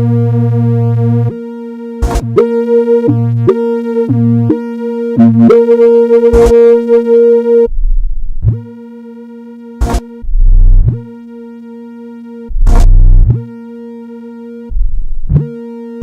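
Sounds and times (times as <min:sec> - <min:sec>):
buzzy synthesized tone: 0:00.0 - 0:07.7
low pulsing tone: 0:02.0 - 0:05.7, 0:07.5 - 0:11.5, 0:12.1 - 0:13.8, 0:14.6 - 0:15.8
very deep hum: 0:07.7 - 0:09.0, 0:09.8 - 0:11.2, 0:12.4 - 0:13.6, 0:14.7 - 0:15.6.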